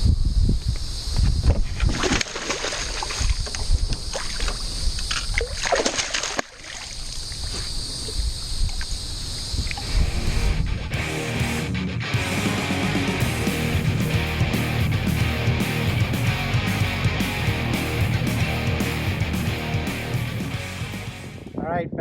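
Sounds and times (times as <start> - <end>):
wind buffeting microphone: 0.0 - 5.6, 7.3 - 11.0
water splashing: 1.8 - 8.9.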